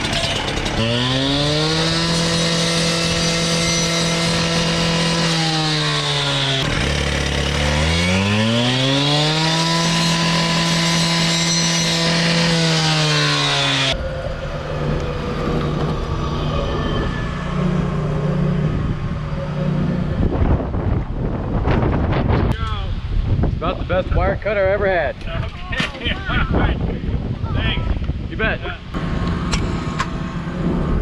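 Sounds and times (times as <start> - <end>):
cut-off saw engine revving: 0.0 - 20.4.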